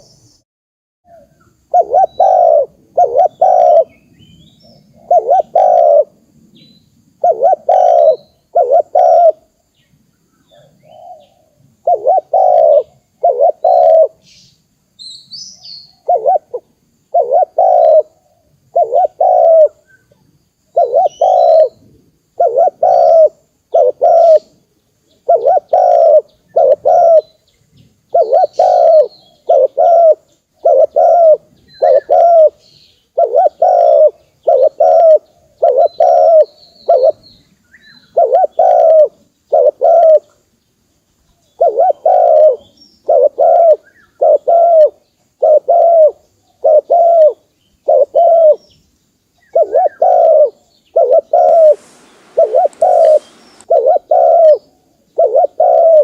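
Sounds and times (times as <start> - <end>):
dove cooing: 1.1 - 4.0, 4.9 - 6.2, 7.2 - 9.5, 10.5 - 14.2, 15.9 - 19.8, 20.7 - 24.5, 25.2 - 27.4, 28.1 - 32.6, 33.2 - 37.2, 38.0 - 40.4, 41.6 - 48.6, 49.5 - 56.0
small birds chirping: 1.1 - 56.0.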